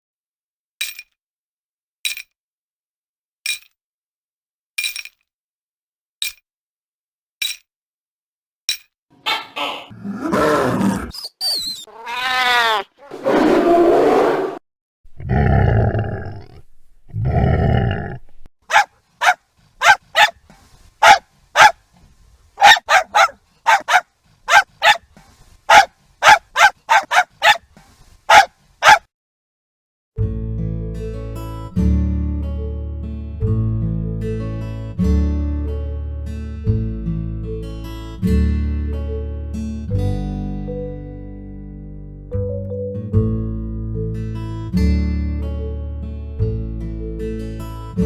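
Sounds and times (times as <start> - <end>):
dog barking: 9.2 - 9.9, 18.7 - 20.4, 21.0 - 21.8, 22.6 - 25.1, 25.7 - 27.7, 28.3 - 29.1
dog growling: 9.9 - 11.2, 15.1 - 18.4.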